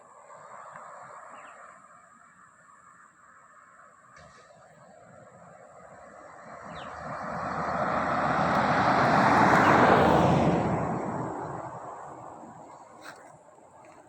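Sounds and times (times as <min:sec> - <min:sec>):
vehicle passing by: 0:05.9 - 0:13.2.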